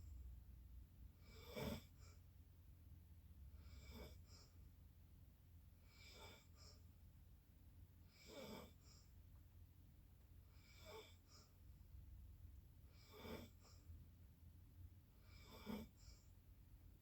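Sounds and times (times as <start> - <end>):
person snoring faintly: 8.1 - 9.0, 12.9 - 13.8, 15.2 - 16.2.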